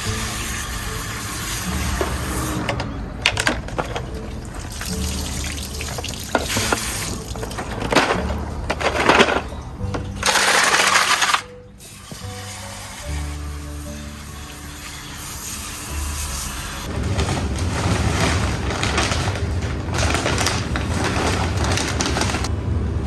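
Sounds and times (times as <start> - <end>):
background music with low notes: 0.0 - 22.6
water splashing and running: 3.7 - 7.6.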